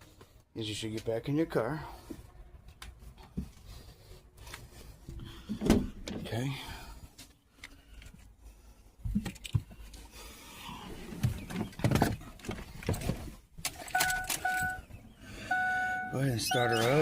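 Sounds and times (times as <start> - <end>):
knocks bumps and rustling: 11.2 - 13.4
electronic warning chime: 14.0 - 14.8, 15.4 - 17.0.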